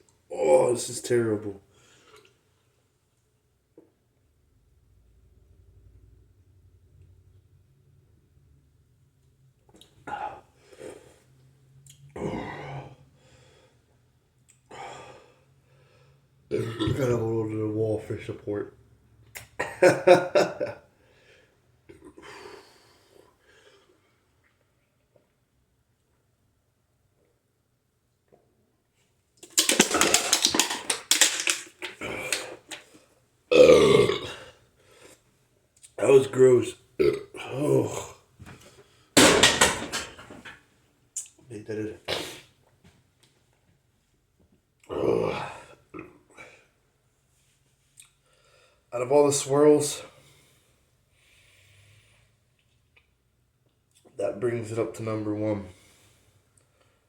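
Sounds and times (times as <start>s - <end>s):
man gasping: 12.2s - 13.6s
man belching loudly: 16.5s - 17.2s, 33.5s - 34.5s, 37.0s - 38.2s, 44.8s - 46.2s.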